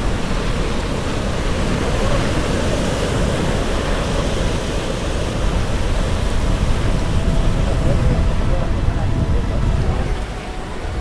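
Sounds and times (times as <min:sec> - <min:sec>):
water rushing: 0:00.0 - 0:11.0
wind rushing: 0:03.3 - 0:11.0.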